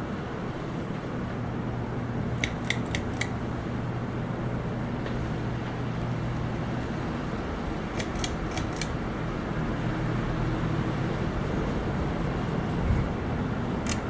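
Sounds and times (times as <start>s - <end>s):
ceiling fans running: 0.0s - 14.0s
sharp clicks: 2.4s - 3.4s, 8.0s - 9.0s.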